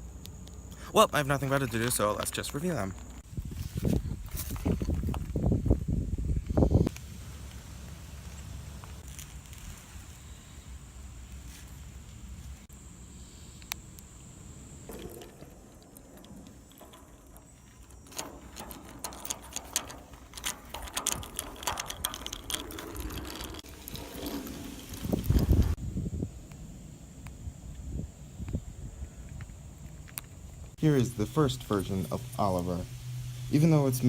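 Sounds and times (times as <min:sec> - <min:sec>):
small hard objects rattling: 0:14.9 - 0:25.8.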